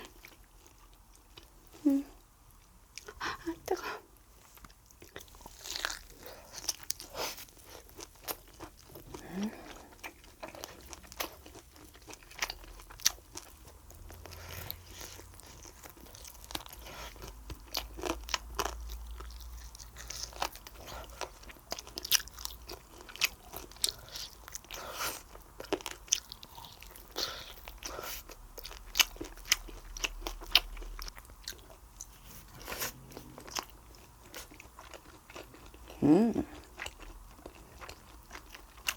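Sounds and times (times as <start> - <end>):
person chewing food: 0.0 - 38.9.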